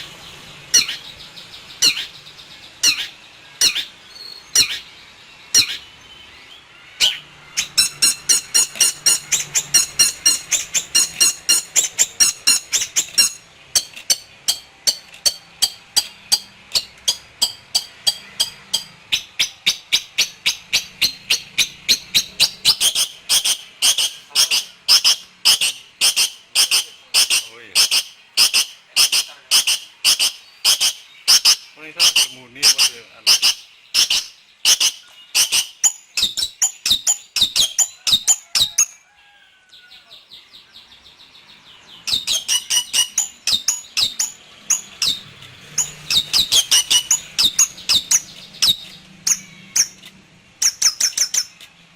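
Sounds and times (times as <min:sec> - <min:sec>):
bird repeating sharp high notes: 0:07.0 - 0:37.9, 0:42.1 - 0:45.2, 0:45.8 - 0:50.0.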